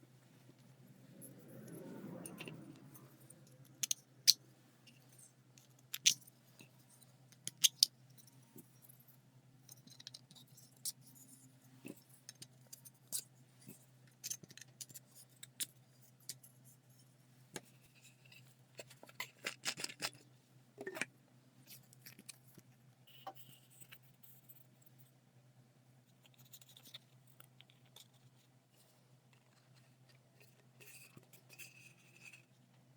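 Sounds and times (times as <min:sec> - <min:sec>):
plastic parts clicking and rattling: 0:07.3 - 0:07.9.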